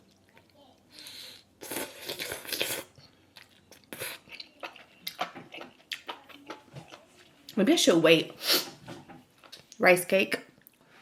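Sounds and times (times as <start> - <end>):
person chewing with wet smacks: 0.0 - 7.6.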